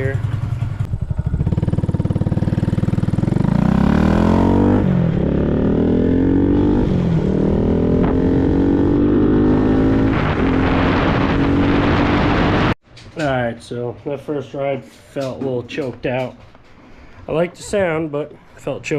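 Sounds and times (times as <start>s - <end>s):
motorcycle engine shifting gears: 0.0s - 12.8s.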